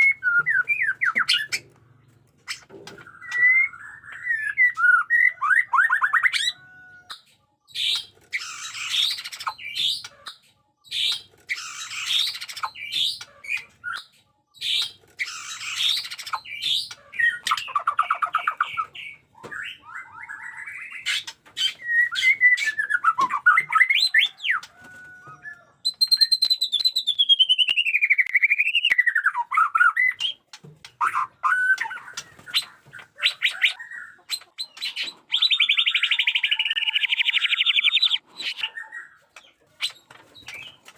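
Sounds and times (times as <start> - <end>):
songbird singing: 0.0 - 40.9.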